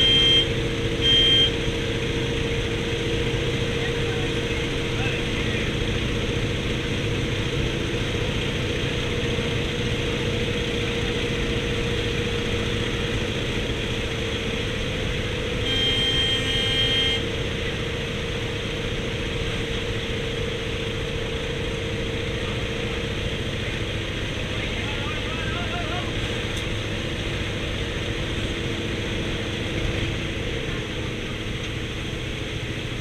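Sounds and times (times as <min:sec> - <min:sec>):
high beep: 0:00.0 - 0:01.6, 0:15.7 - 0:17.2
radial engine droning: 0:00.0 - 0:33.0.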